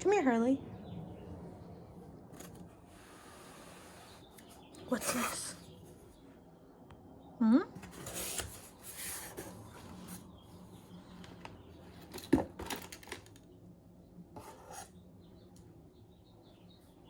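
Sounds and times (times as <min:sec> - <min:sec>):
cardboard box rustling and scraping: 0:02.3 - 0:05.7, 0:07.8 - 0:10.9.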